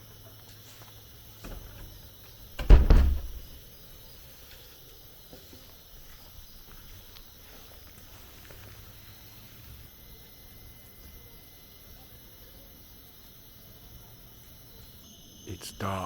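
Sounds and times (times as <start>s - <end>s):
insects chirring: 0.0s - 16.0s
loud low thump: 2.6s - 3.6s.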